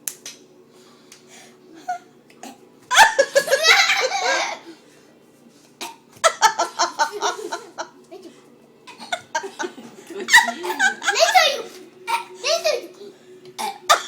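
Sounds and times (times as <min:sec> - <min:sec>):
person laughing: 0:06.3 - 0:07.9, 0:09.0 - 0:11.2.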